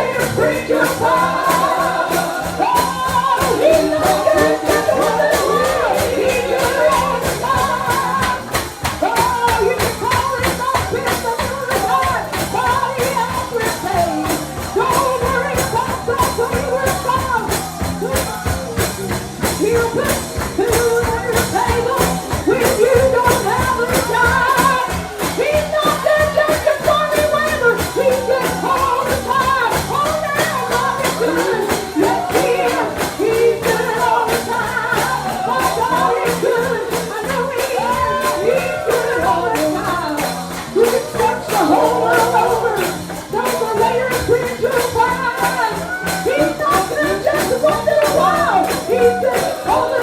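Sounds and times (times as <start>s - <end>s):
bass line: 0.0s - 50.0s
gospel singing: 0.0s - 50.0s
tambourine beat: 0.0s - 50.0s.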